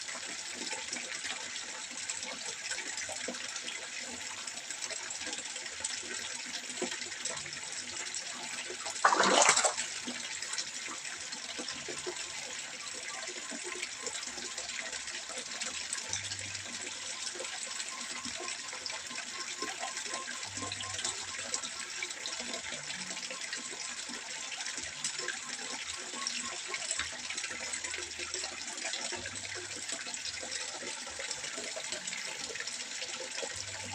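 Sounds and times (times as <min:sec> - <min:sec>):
water trickling into a pond: 0:00.0 - 0:33.9.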